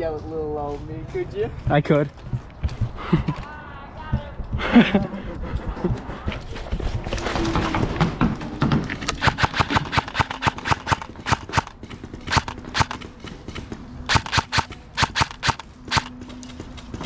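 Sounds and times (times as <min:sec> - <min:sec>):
airsoft guns firing: 0:09.1 - 0:16.3.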